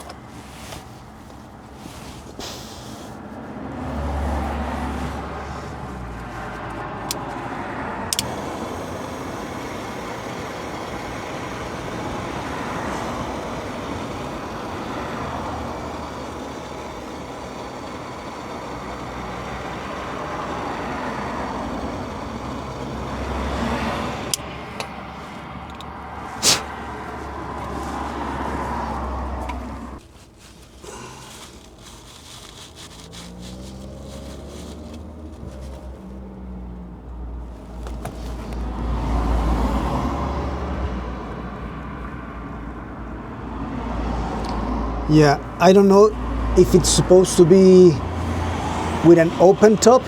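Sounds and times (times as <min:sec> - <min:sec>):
gas torch hissing: 0:02.3 - 0:03.0, 0:08.1 - 0:24.9, 0:26.2 - 0:26.9, 0:44.4 - 0:50.0.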